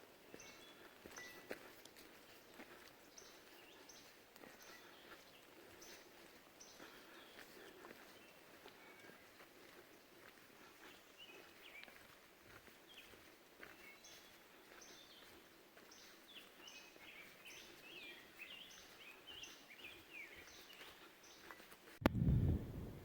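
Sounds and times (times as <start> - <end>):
quiet hiss: 22.0 - 23.0.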